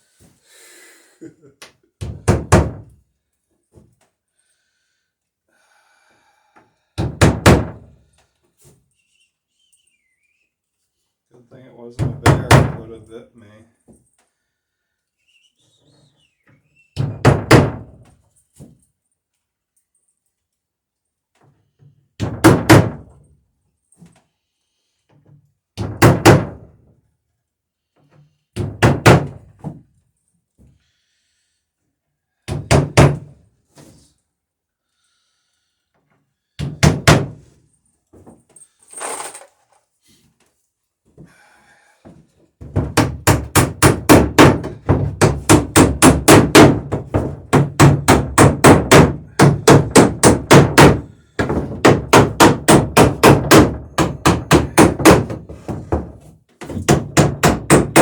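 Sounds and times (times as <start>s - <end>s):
hammer striking wooden planks: 7.0s - 7.9s, 12.0s - 12.9s, 17.0s - 18.0s, 22.2s - 23.1s, 25.8s - 26.7s, 28.6s - 29.6s, 32.5s - 33.4s, 36.6s - 37.4s, 42.6s - 58.0s.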